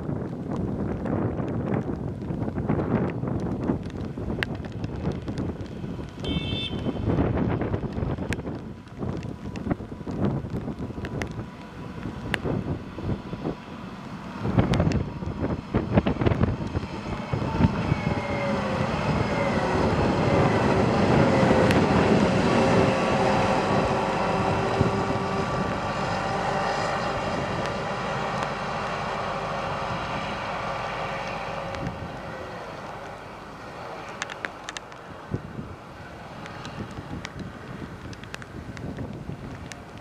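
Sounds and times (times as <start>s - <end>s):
wind buffeting microphone: 0.0s - 40.0s
excavator diesel engine drone: 11.2s - 37.6s.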